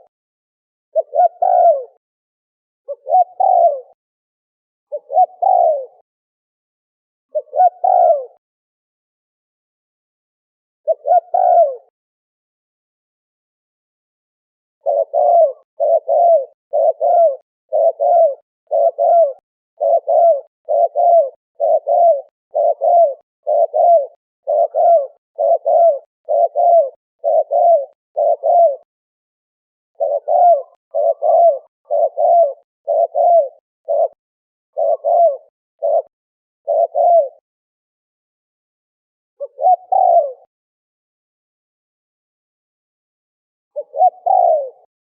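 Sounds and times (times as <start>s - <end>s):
dove cooing: 0.9s - 2.0s, 2.9s - 4.0s, 4.9s - 6.0s, 7.3s - 8.4s, 10.8s - 11.9s, 14.8s - 28.9s, 30.0s - 37.4s, 39.4s - 40.5s, 43.8s - 44.9s.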